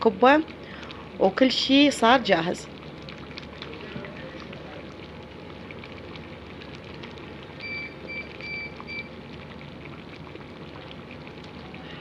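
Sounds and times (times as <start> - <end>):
soup boiling in a pot: 0.0 - 12.0.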